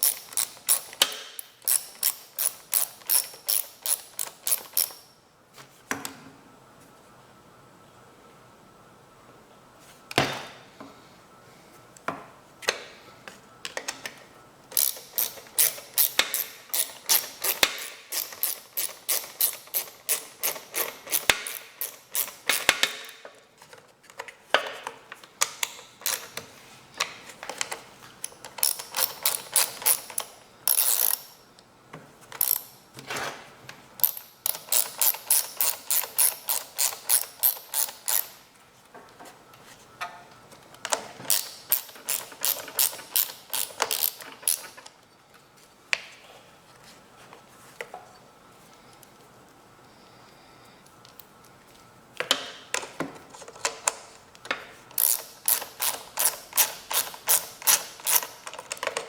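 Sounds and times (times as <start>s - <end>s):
ratchet wrench clicking: 0.0s - 5.1s, 14.7s - 23.2s, 26.0s - 26.4s, 28.4s - 31.4s, 32.4s - 32.8s, 34.0s - 38.4s, 41.3s - 44.8s, 55.0s - 58.8s.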